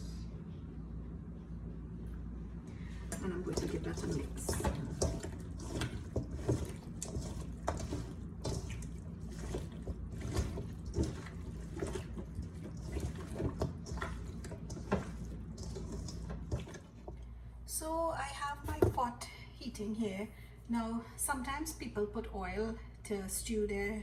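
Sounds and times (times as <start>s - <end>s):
steady low hum: 0.0s - 24.0s
wet squelches of mixing chicken: 2.7s - 17.6s.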